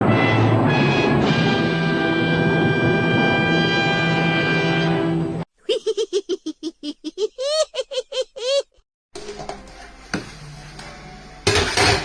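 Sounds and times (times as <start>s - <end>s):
timpani roll: 0.0s - 5.1s
orchestral brass chords: 0.0s - 5.4s.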